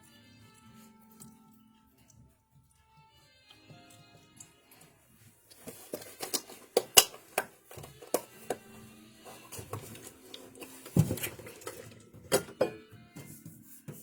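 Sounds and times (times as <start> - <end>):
kitchen containers clicking and knocking: 5.5 - 14.0.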